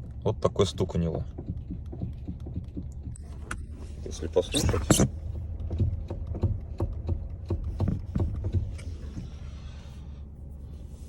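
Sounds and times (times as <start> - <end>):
steering column knocking: 0.0 - 3.7, 4.7 - 9.4
low steady hum: 0.0 - 11.0.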